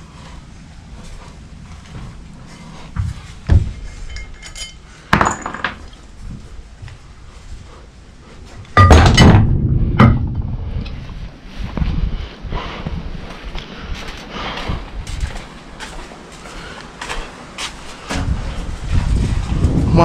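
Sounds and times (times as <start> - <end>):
metal tools clinking: 3.9 - 6.0.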